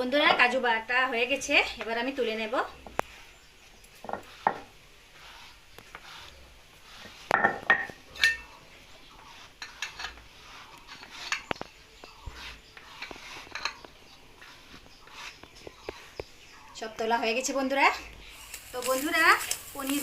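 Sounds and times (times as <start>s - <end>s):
spoon scraping a container: 4.0s - 16.3s.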